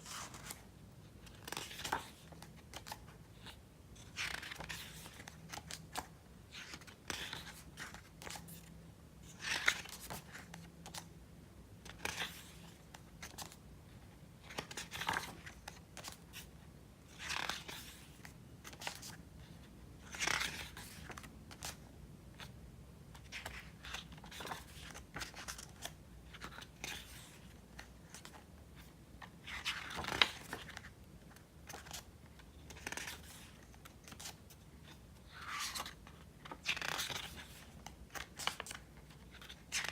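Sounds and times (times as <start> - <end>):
pages being turned: 1.2 - 8.6, 20.1 - 21.8, 29.2 - 30.9, 31.6 - 32.0, 32.6 - 39.9.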